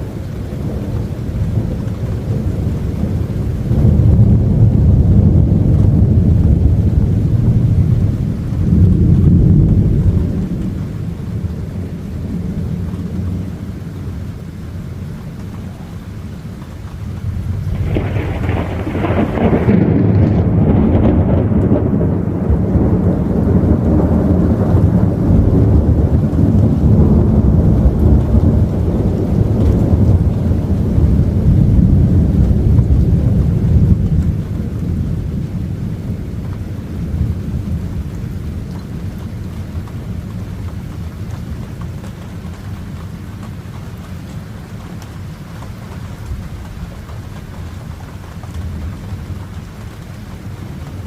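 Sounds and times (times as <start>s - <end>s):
low thunder rumble: 0.0s - 51.0s
thunder crack: 0.6s - 11.4s, 17.5s - 36.2s.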